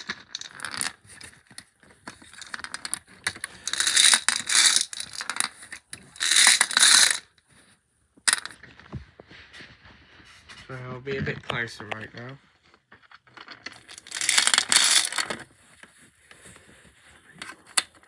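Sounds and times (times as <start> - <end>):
lottery balls clattering: 0.0 - 7.3, 8.3 - 8.8, 13.3 - 15.5.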